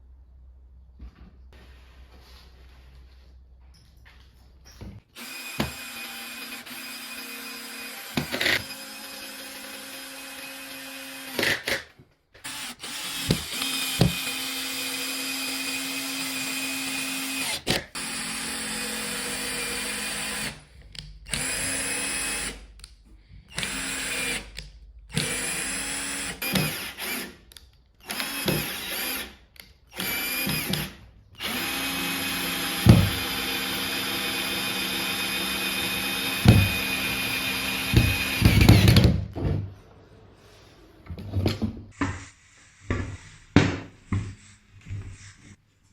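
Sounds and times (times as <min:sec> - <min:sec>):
electric power tool motor running: 0:05.2 - 0:11.4, 0:12.5 - 0:20.6, 0:31.4 - 0:39.1.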